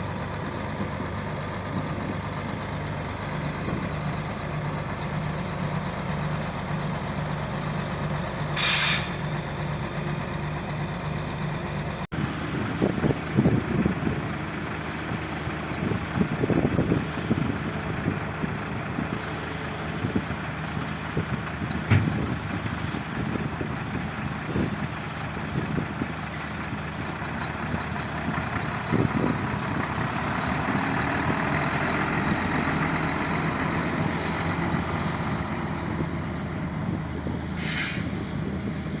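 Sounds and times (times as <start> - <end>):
diesel truck engine running: 0.0 - 39.0
air brake hiss: 8.6 - 9.2, 24.5 - 24.9, 37.6 - 38.2.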